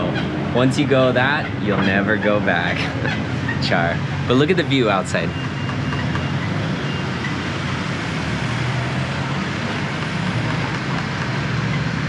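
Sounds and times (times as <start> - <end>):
road traffic noise: 0.0 - 12.0.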